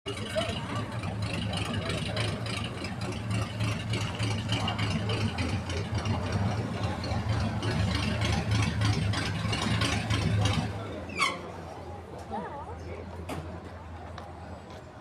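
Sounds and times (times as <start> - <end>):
car engine idling loudly: 0.1 - 11.0.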